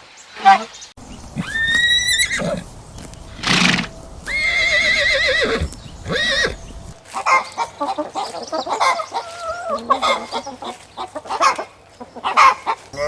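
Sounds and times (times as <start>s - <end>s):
horse whinnying: 1.2s - 2.7s, 3.3s - 6.6s.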